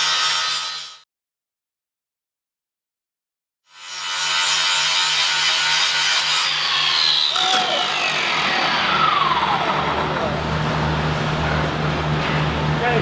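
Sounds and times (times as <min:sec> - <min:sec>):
angle grinder grinding: 0:05.3 - 0:10.7
grinder wheel whine falling in pitch: 0:07.3 - 0:11.1.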